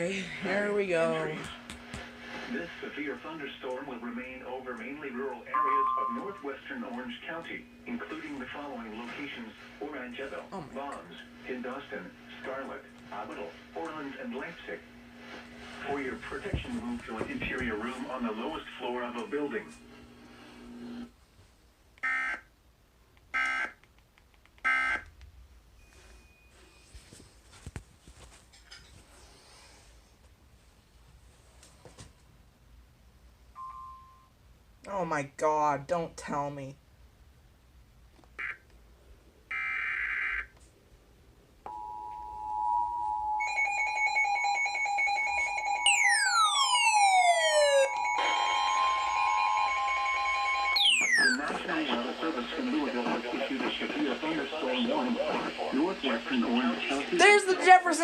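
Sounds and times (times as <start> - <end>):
two-tone attention signal: 5.5 - 6.5, 45.8 - 51.5
pulsing alert tones: 45.8 - 49.2, 50.6 - 51.4
screeching digital data bursts: 50.7 - 51.4.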